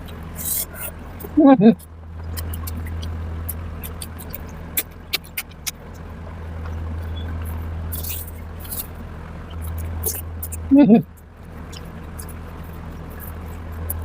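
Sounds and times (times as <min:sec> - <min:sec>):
mouth clicks and smacks from chewing: 0:00.0 - 0:14.0
steady low hum: 0:00.0 - 0:14.0.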